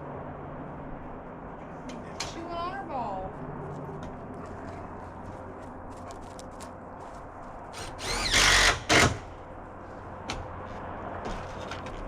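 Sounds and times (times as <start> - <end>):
power drill driving screw into metal: 7.8 - 9.2.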